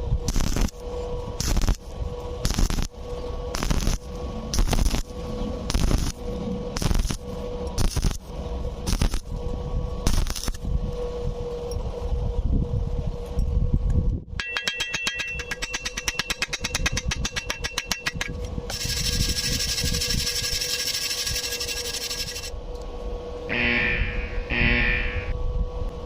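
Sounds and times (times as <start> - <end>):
welding arc hissing crackle: 0.0 - 0.8, 1.4 - 5.1, 5.7 - 6.2, 6.8 - 9.3, 10.0 - 10.6
sharp metallic ticks: 14.4 - 22.5.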